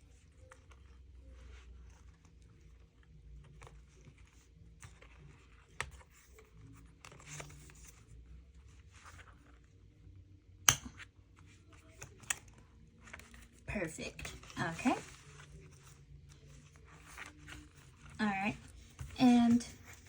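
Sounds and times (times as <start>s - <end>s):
paper envelope rustling and tearing: 14.3s - 18.9s.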